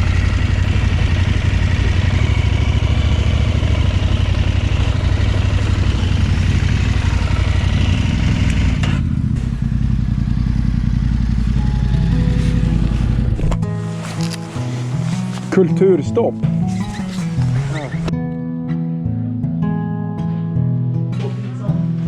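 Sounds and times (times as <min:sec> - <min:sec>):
motorcycle engine running: 0:00.0 - 0:18.1.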